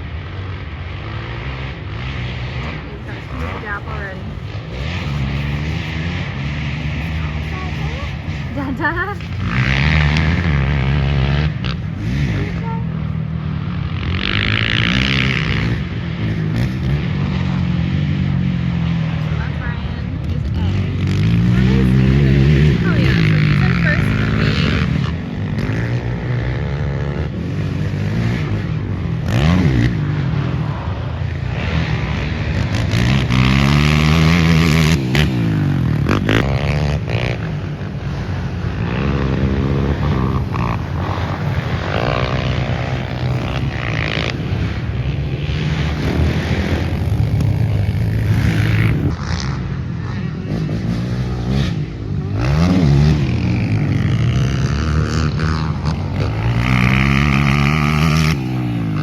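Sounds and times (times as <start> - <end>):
quad engines revving: 0.0 - 59.0.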